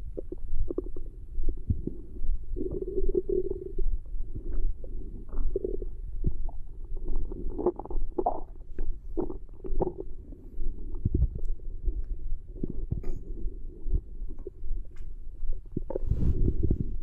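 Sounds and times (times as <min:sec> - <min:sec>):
stomach growling: 0:00.0 - 0:17.0.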